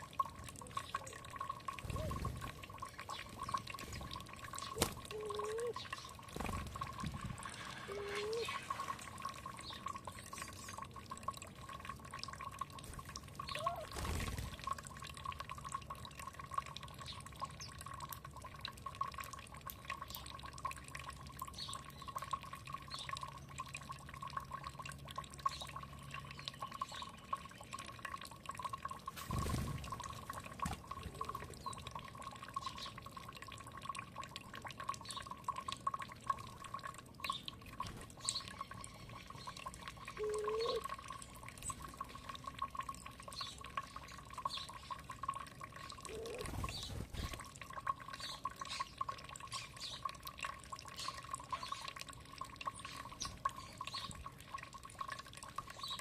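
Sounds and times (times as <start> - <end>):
water trickling and dripping: 0.0 - 56.0
faint bird chirps: 13.4 - 13.9, 38.2 - 40.9.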